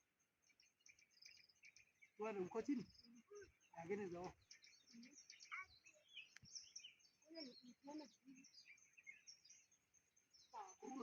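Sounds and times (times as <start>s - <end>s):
small birds chirping: 0.0s - 11.0s
faint distant talk: 10.4s - 11.0s.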